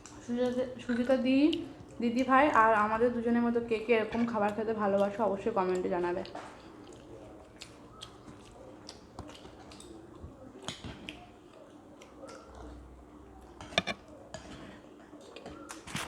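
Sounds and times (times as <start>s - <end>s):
people chewing food: 0.0s - 16.0s.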